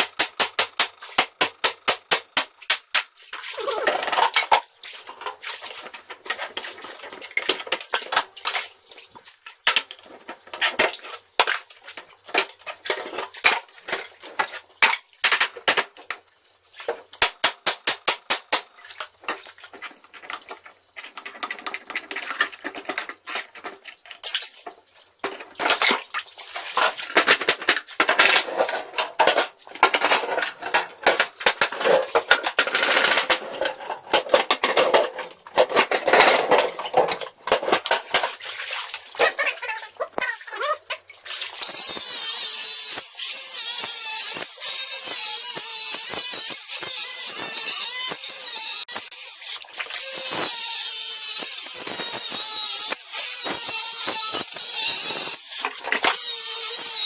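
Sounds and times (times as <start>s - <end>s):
metal objects clattering: 2.8s - 8.6s, 19.2s - 38.7s.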